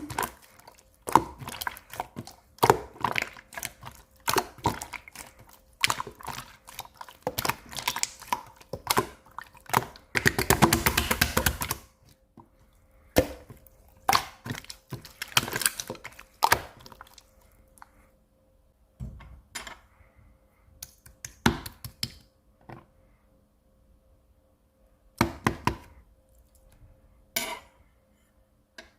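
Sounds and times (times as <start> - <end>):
slime clicking and crackling: 0.0 - 11.8, 13.2 - 17.3.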